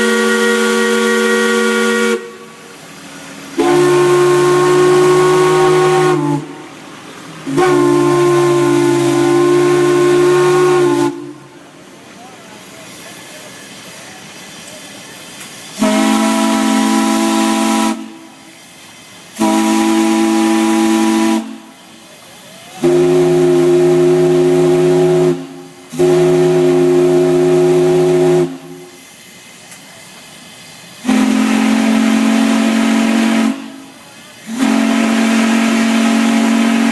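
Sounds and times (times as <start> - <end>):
steam whistle chord blasts: 0.0 - 2.7, 3.5 - 6.8, 7.4 - 11.6, 15.7 - 18.6, 19.2 - 21.8, 22.8 - 29.1, 31.0 - 36.9
steady steam hiss: 0.0 - 36.9.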